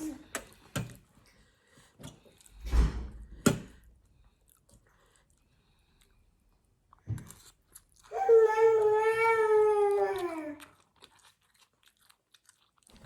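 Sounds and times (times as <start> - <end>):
crunching food: 6.9 - 9.0, 9.9 - 13.0.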